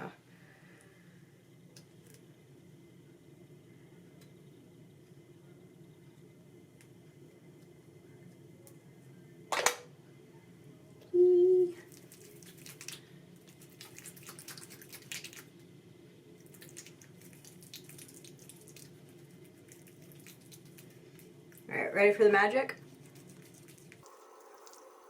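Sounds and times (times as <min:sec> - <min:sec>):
balm smearing on face: 0:11.9 - 0:15.5, 0:22.8 - 0:25.0.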